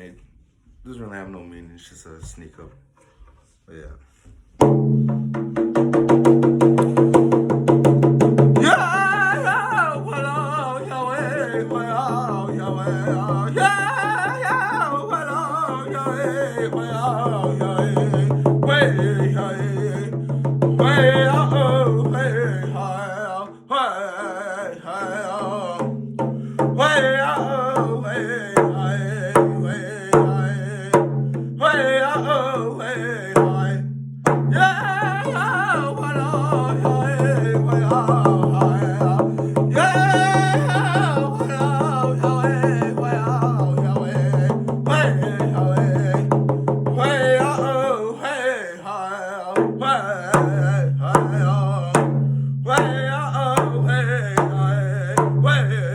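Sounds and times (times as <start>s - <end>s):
drum beats: 4.4s - 23.4s, 24.2s - 48.0s, 49.6s - 55.9s
person singing high wavering voice: 8.6s - 20.1s, 34.6s - 46.2s.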